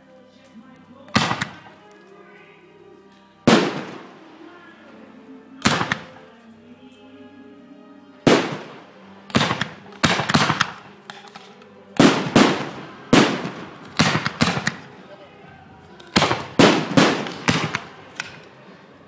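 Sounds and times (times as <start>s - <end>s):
faint music: 0.0s - 19.0s
fireworks bangs: 1.1s - 1.8s, 3.5s - 4.5s, 5.6s - 6.3s, 8.2s - 15.2s, 16.0s - 18.6s.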